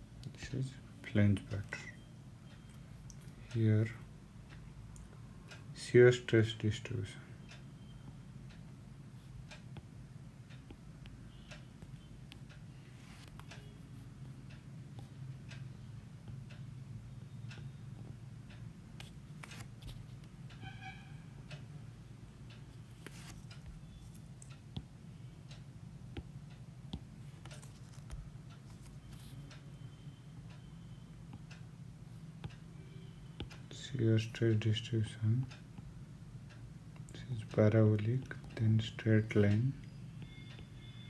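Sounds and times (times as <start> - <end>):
pen scratching and tapping: 27.3 - 29.4.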